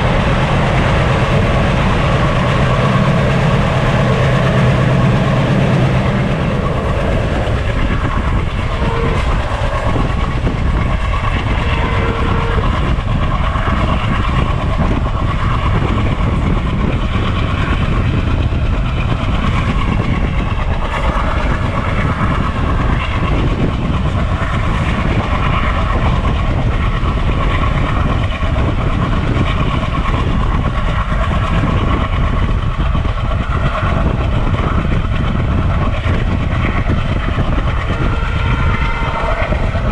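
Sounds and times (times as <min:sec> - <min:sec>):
strong low hum: 0:00.0 - 0:20.1
train wheels clattering over rails: 0:00.0 - 0:39.9.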